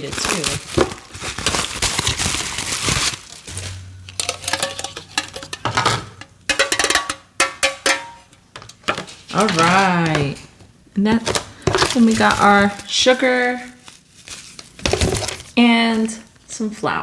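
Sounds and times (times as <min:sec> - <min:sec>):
packaging crinkling: 0:00.0 - 0:04.4, 0:11.2 - 0:16.4.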